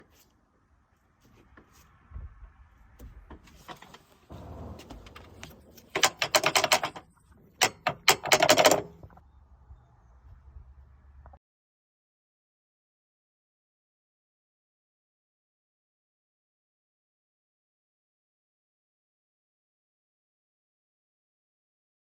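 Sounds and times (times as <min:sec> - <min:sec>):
metal hardware clicking and rattling: 0:04.7 - 0:09.2.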